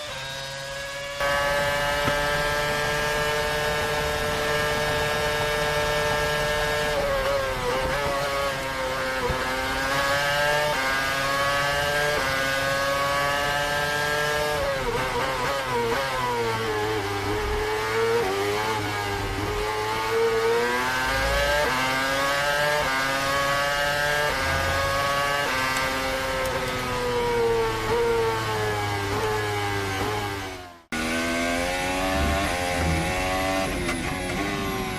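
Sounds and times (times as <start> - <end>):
racing car engine revving: 0.0 - 34.9.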